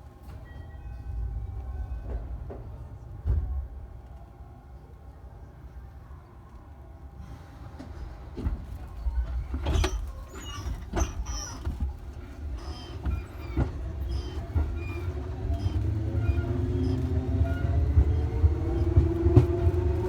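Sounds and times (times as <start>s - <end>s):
train running rumble: 0.2s - 4.3s, 7.2s - 20.0s
wheels clacking on rail joints: 7.8s - 20.0s.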